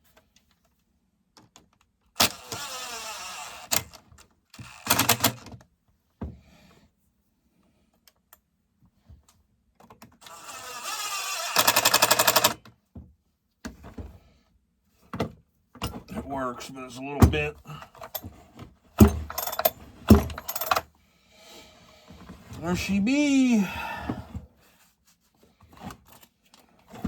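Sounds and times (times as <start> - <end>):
small electric power tool running: 2.2 - 3.7, 10.3 - 12.6.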